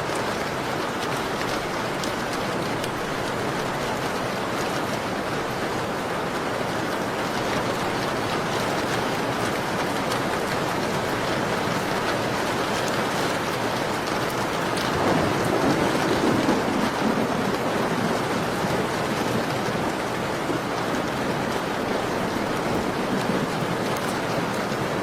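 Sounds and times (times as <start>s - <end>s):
steady rain falling: 0.0s - 25.0s.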